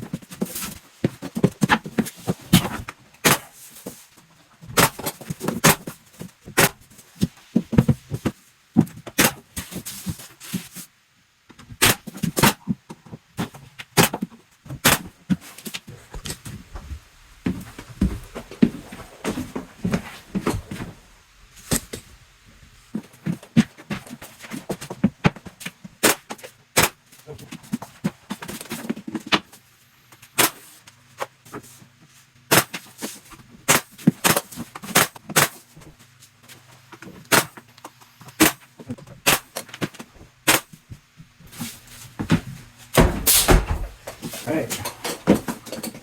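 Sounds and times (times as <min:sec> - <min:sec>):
handling noise: 0:15.4 - 0:25.5, 0:39.9 - 0:46.0.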